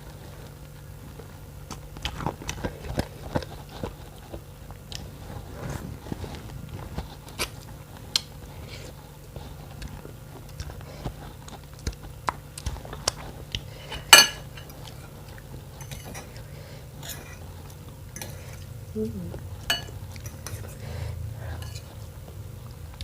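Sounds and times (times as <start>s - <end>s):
chewing and biting: 1.1s - 13.9s.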